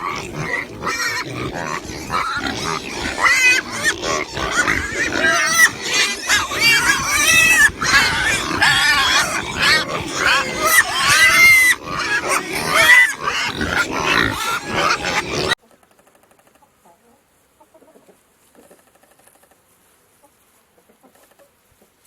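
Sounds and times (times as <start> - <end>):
pigs squealing: 0.0 - 15.6.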